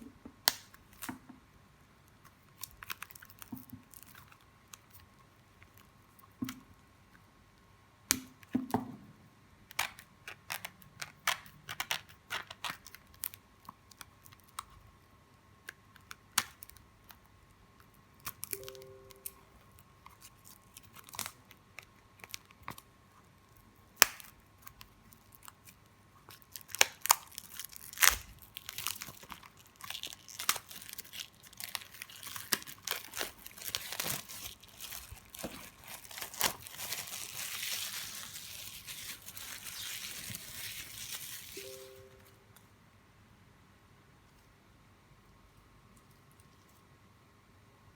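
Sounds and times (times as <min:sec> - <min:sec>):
packaging tearing and crinkling: 0:02.5 - 0:05.0, 0:09.8 - 0:14.6, 0:20.0 - 0:22.8, 0:24.0 - 0:42.0.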